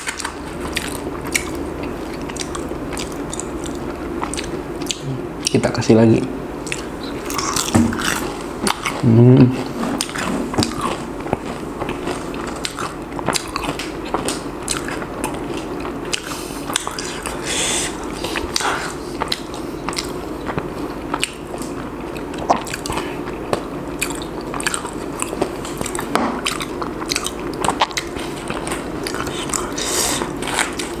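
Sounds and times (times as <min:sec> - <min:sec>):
crunchy chewing: 0:00.0 - 0:31.0
wet mouth clicks: 0:06.6 - 0:15.0, 0:16.1 - 0:21.4.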